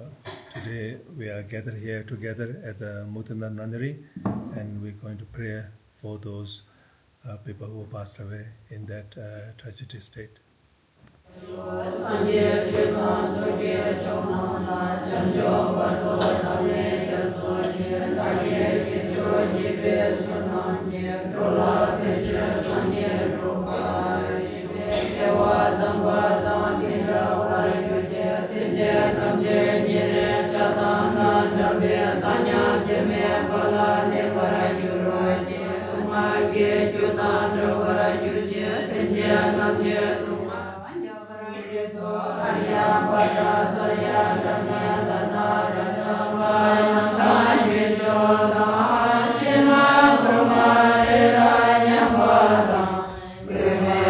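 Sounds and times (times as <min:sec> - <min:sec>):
women chanting in unison: 0:11.3 - 0:54.0.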